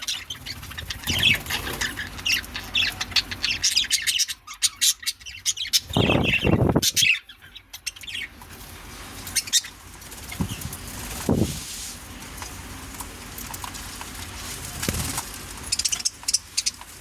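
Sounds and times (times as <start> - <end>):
birds flapping wings: 0.5 - 2.1, 10.0 - 11.5, 12.4 - 15.9.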